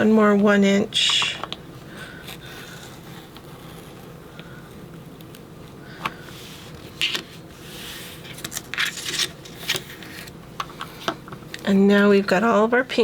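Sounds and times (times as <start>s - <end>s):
blade scraping paper: 2.1s - 4.2s.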